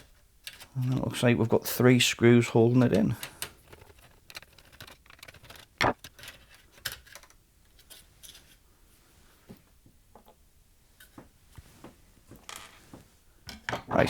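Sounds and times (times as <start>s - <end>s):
light clicks and taps of screws: 0.0s - 1.0s.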